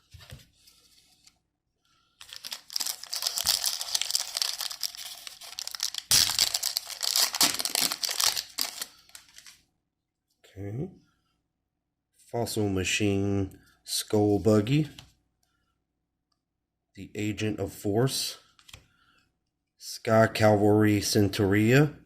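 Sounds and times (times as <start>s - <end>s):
foil pack tearing and crinkling: 2.2s - 9.5s.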